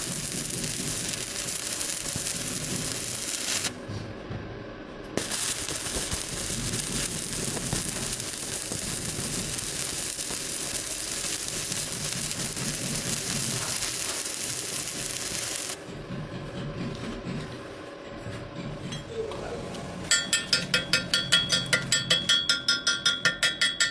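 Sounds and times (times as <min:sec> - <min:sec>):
welding arc crackling: 0:00.0 - 0:03.8, 0:05.2 - 0:15.8.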